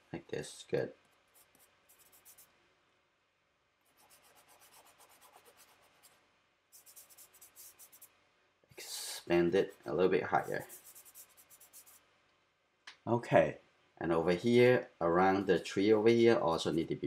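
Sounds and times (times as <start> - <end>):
charcoal rubbing on paper: 1.3 - 2.5, 3.9 - 8.1, 8.8 - 12.0.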